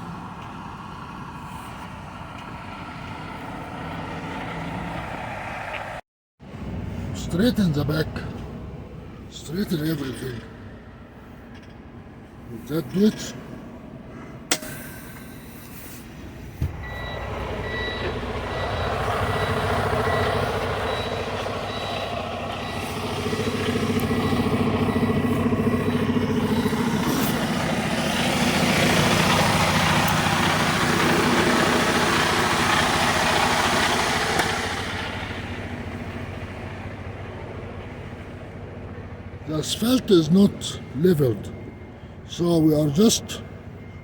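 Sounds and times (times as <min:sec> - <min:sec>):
diesel truck engine under load: 0:00.0 - 0:44.0
high beeping: 0:16.8 - 0:28.0.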